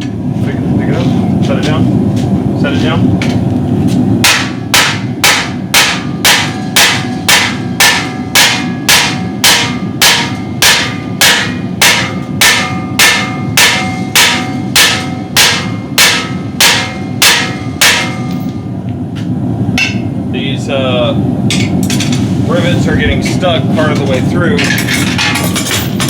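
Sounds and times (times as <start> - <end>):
steady low rush: 0.0 - 26.0
hammer striking metal rivets: 24.6 - 26.0.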